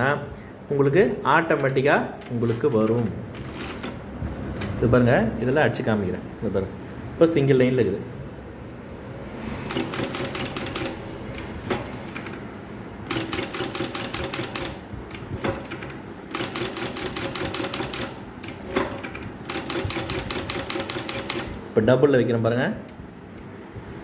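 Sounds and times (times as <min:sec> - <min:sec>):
typewriter keystrokes: 0:01.6 - 0:04.9, 0:09.7 - 0:21.6.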